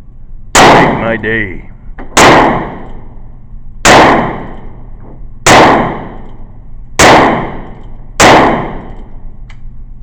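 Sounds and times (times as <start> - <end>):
gunshots: 0.6 - 1.2, 2.1 - 3.0, 3.8 - 4.7, 5.4 - 6.2, 7.0 - 9.0.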